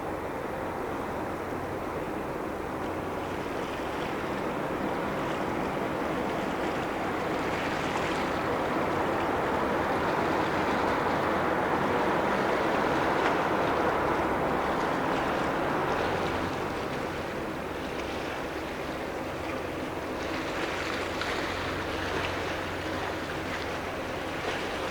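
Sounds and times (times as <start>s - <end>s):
waves splashing against harbour edge: 0.0s - 24.9s.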